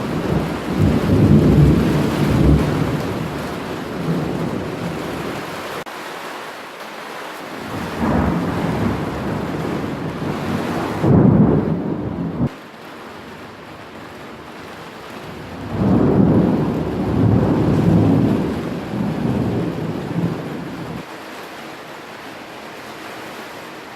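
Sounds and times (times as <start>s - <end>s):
thunder rumbling: 0.0s - 5.5s, 7.6s - 12.6s, 14.0s - 21.1s
rain hissing: 0.0s - 23.9s.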